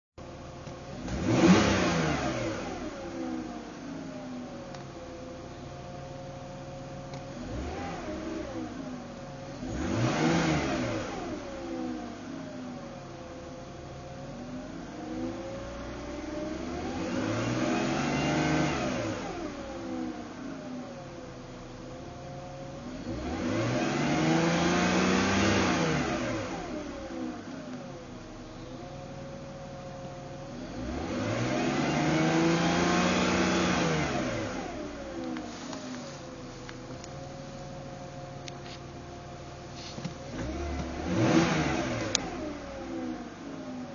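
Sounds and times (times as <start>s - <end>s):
engine revving: 0.9s - 4.5s, 7.3s - 12.8s, 14.4s - 20.8s, 22.8s - 29.1s, 30.4s - 37.2s, 39.6s - 43.9s.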